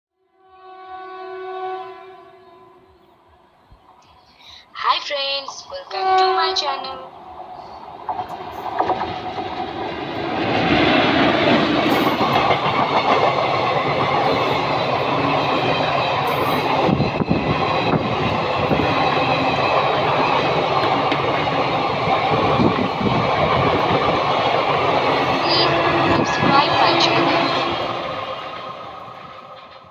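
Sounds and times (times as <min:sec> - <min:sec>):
train passing at speed: 0:00.4 - 0:29.9
wheels clattering over rails: 0:08.0 - 0:25.4.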